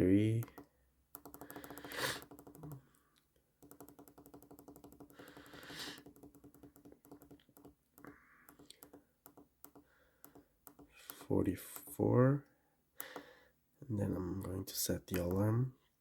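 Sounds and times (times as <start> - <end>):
rapid clicking of push buttons: 0.3 - 2.8, 3.6 - 11.2.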